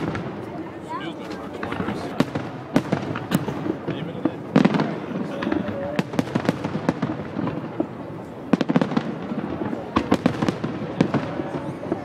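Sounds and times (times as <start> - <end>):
fireworks bursting and crackling: 0.0 - 12.0.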